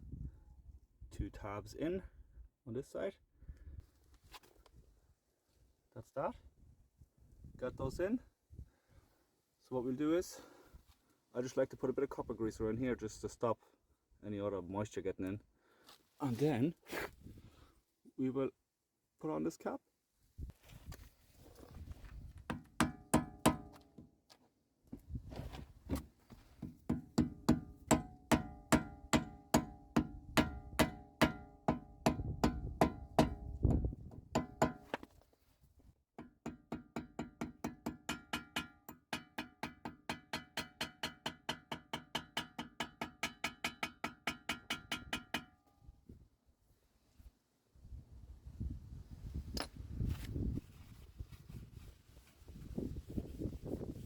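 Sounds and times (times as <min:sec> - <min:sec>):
hammer tapping metal cap: 0:26.9 - 0:33.5, 0:34.4 - 0:34.8, 0:36.2 - 0:45.6.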